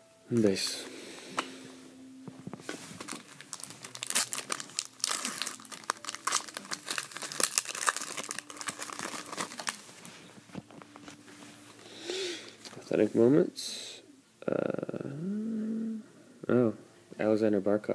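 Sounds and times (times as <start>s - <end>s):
cards rustling: 2.6s - 11.8s
foil wrapper crinkling and tearing: 3.0s - 9.9s.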